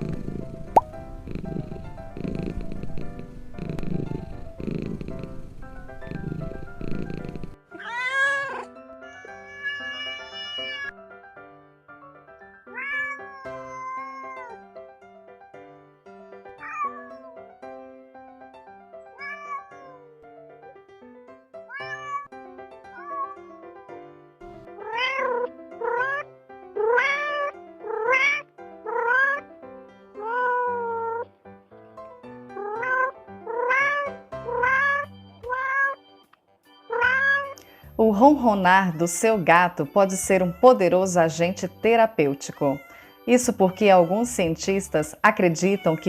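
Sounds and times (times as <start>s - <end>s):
soft background music: 0.0s - 46.0s
cats meowing: 7.7s - 10.9s, 12.6s - 14.6s, 16.5s - 17.4s, 19.1s - 20.4s, 21.7s - 22.3s, 22.9s - 23.6s, 24.8s - 29.5s, 30.2s - 31.2s, 32.5s - 36.0s, 36.8s - 37.7s, 39.9s - 44.2s, 45.5s - 46.0s.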